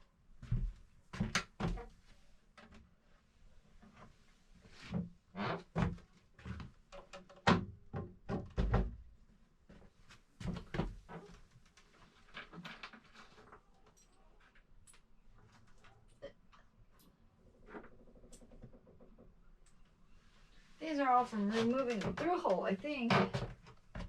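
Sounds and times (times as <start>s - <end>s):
objects knocking and clunking: 21.7s - 24.0s.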